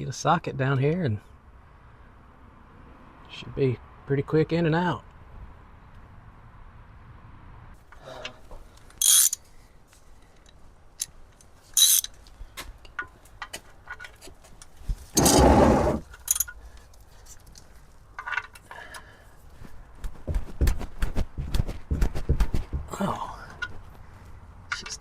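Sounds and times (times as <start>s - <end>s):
metal scraping: 9.0s - 9.4s, 11.8s - 12.1s, 15.1s - 16.6s
ratchet clicks: 9.0s - 9.4s, 11.8s - 12.1s
metal tools clinking: 9.0s - 9.5s, 11.0s - 12.2s, 15.2s - 16.6s, 18.2s - 18.7s.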